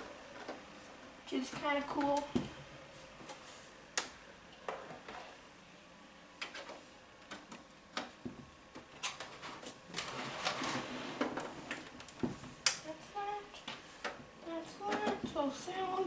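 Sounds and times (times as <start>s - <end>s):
rustling of cables: 6.4s - 12.8s.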